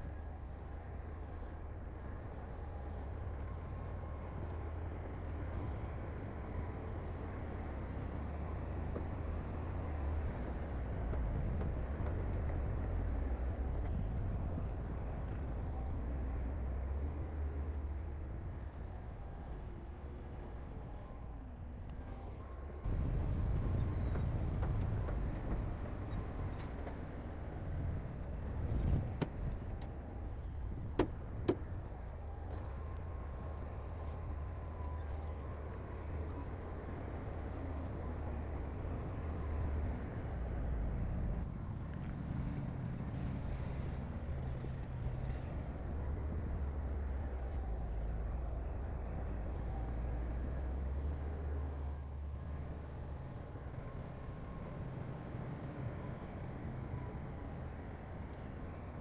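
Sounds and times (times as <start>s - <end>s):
diesel engine rumbling: 22.9s - 32.0s.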